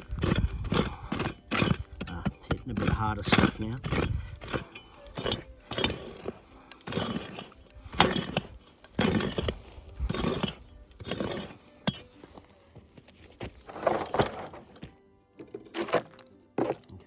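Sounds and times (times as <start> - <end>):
dirt and stones scraping: 0.0 - 17.0
pick striking stony ground: 0.0 - 17.0.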